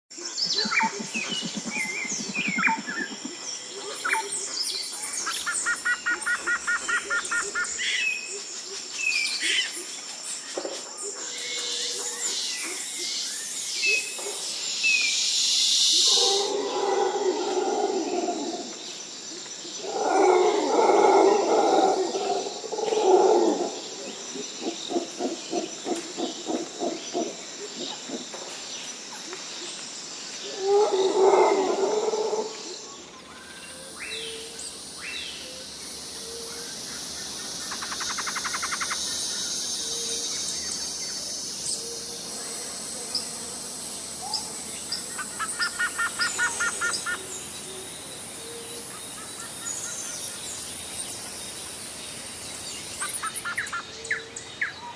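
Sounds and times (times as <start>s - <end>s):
insects hissing: 0.1s - 54.9s
bird chirps and trills: 0.2s - 8.2s, 33.2s - 42.0s.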